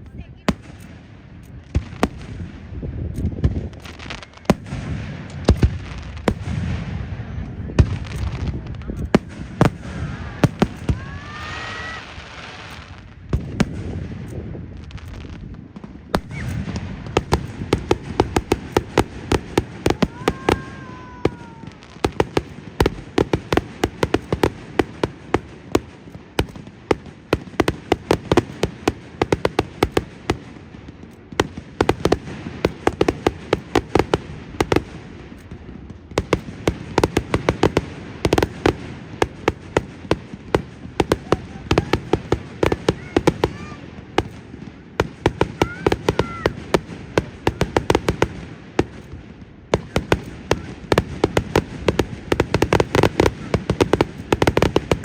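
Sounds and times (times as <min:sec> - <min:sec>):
deep firework booms: 0:00.0 - 0:55.0
fireworks crackling and banging: 0:00.0 - 0:55.0
whistling firework: 0:01.6 - 0:55.0.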